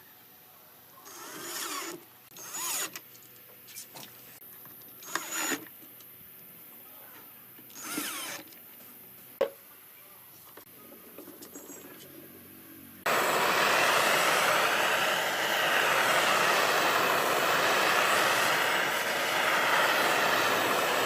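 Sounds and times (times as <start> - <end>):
power drill spinning: 1.1 - 3.0, 5.0 - 5.7, 7.7 - 8.6, 13.1 - 21.0.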